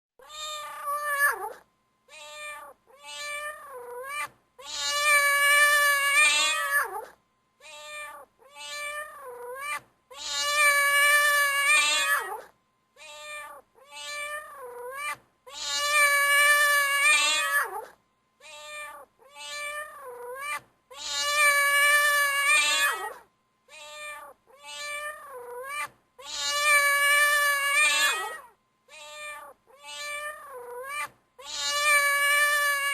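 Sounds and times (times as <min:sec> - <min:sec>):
cat howling: 0:07.7 - 0:17.9, 0:18.5 - 0:23.2, 0:23.8 - 0:32.9.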